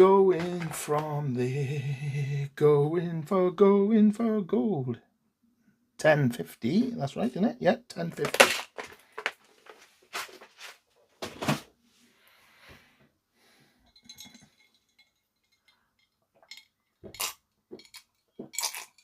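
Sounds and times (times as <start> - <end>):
small hard objects knocking: 8.2 - 10.3, 16.4 - 19.0
light metallic clinks: 13.8 - 16.8.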